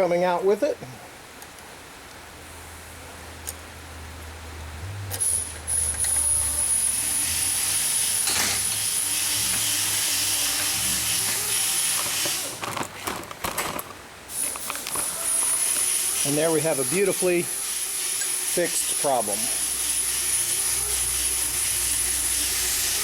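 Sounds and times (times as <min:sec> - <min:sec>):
air blow gun hissing: 0:05.2 - 0:12.7, 0:14.3 - 0:23.0.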